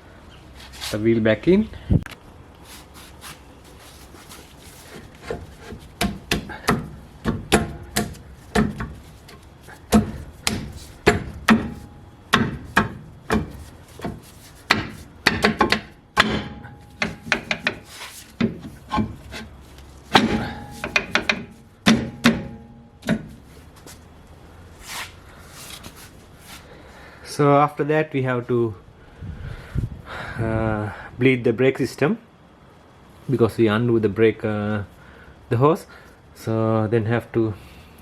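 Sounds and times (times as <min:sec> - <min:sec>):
metallic clicks and knocks: 0:05.3 - 0:19.2, 0:20.1 - 0:23.4
ringing metal strikes: 0:15.3 - 0:17.7, 0:20.1 - 0:23.3.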